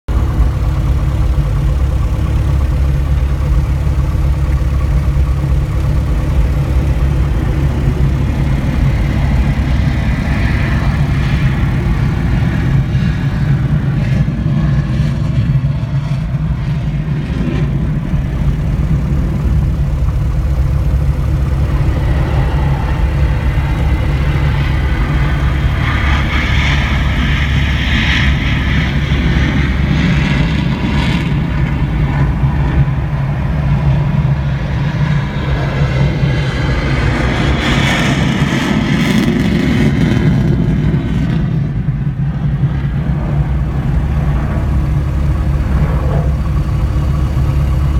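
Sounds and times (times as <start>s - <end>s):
aircraft engine idling: 0.0s - 47.9s.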